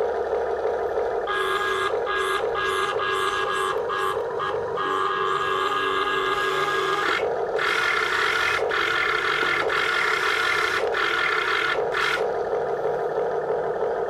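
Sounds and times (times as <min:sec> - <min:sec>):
low motor hum: 0:00.0 - 0:14.0
toy motor whine: 0:01.3 - 0:12.3.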